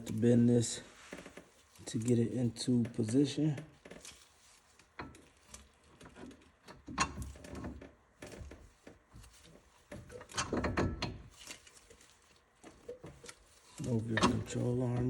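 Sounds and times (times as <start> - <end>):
metal clunks and rattles: 5.0 - 11.5, 12.6 - 15.0.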